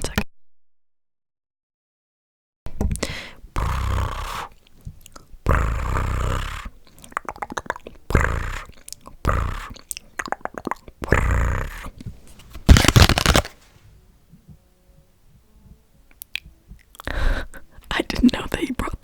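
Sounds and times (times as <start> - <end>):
wet mouth clicks: 2.8 - 12.1, 12.7 - 13.5, 16.1 - 17.2
rustling cards: 12.0 - 13.8.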